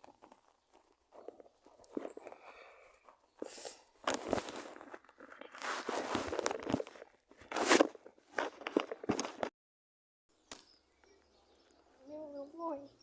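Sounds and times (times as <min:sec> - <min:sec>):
footsteps crunching on rough ground: 0:00.0 - 0:09.5.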